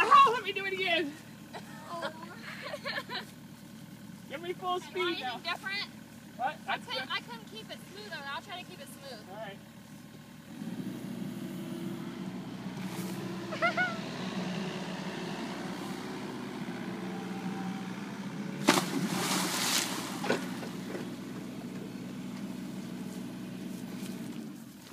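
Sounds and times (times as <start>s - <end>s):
diesel engine running: 0.0s - 24.9s
water splash: 18.6s - 20.6s
rushing water: 18.8s - 20.6s.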